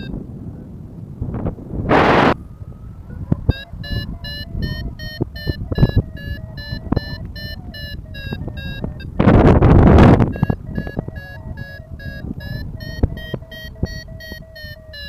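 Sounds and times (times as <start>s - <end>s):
wind buffeting microphone: 0.0s - 15.0s
variometer beeping rapidly: 3.4s - 15.0s.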